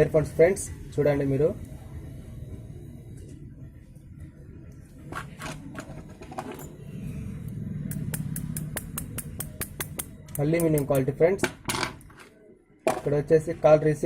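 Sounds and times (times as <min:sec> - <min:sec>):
metal earbuds clicking: 0:07.4 - 0:11.1.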